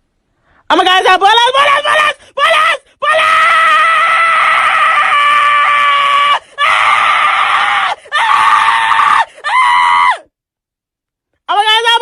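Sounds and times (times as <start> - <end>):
person screaming: 1.6 - 10.3.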